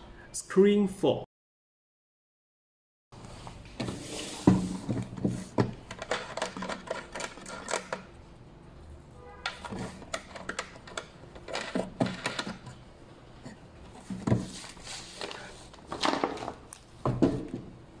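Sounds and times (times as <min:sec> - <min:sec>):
plastic knobs clicking: 0:05.7 - 0:08.1, 0:09.5 - 0:12.8.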